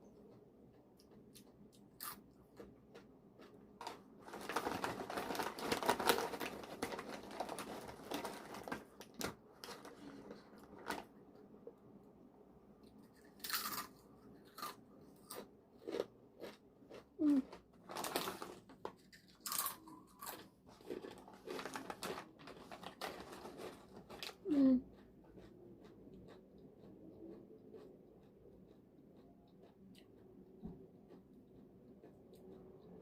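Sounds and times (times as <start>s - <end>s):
chips crunching while chewed: 0.7s - 11.1s, 13.1s - 24.6s.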